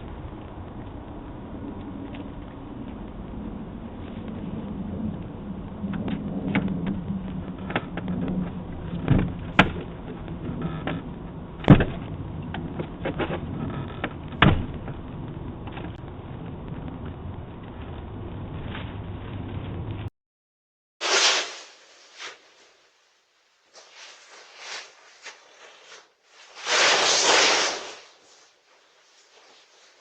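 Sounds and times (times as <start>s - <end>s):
low steady hum: 0.0s - 20.1s.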